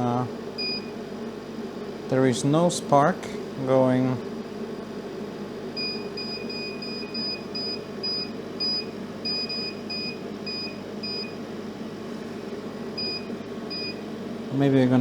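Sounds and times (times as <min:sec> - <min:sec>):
steady machine hum: 0:00.0 - 0:15.0.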